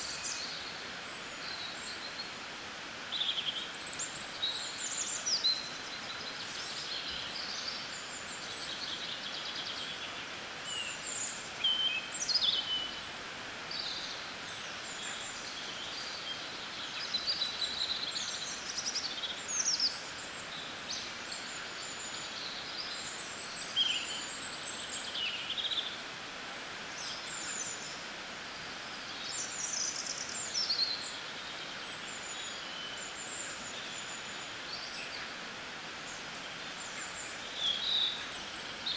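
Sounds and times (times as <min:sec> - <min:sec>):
background hiss: 0:00.0 - 0:38.9
songbirds chirping: 0:03.0 - 0:38.9.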